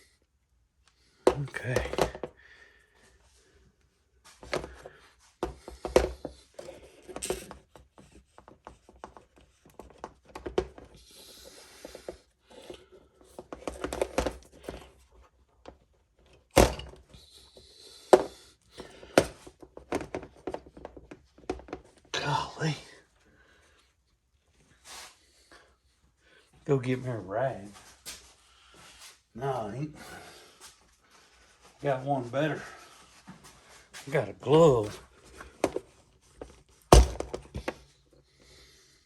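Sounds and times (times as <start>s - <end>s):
metal and plastic parts clattering: 11.9s - 15.0s, 16.3s - 17.1s.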